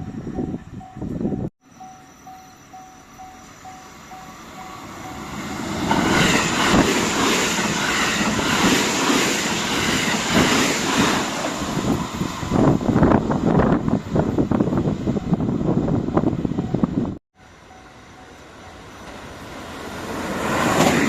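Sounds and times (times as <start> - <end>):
level-crossing warning bell: 0.0 - 6.0, 16.6 - 19.3
electric train passing: 0.0 - 21.0.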